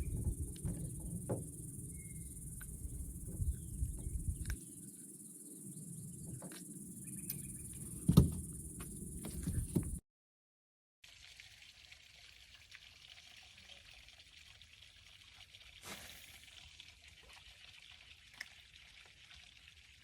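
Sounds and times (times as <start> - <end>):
insects droning: 0.0 - 10.0
knocks and handling noise: 7.8 - 10.0
loud thump: 8.1 - 8.6.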